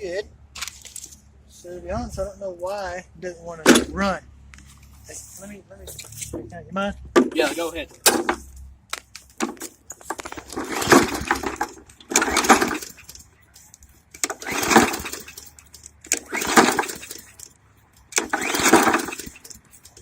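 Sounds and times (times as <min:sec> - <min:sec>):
mower recoil cord pull-start: 0:09.4 - 0:13.3, 0:14.1 - 0:20.0.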